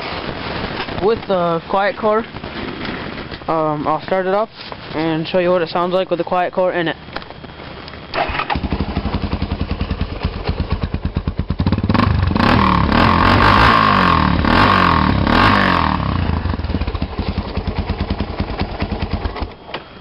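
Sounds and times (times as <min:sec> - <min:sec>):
atv engine idling and revving: 0:08.6 - 0:19.6.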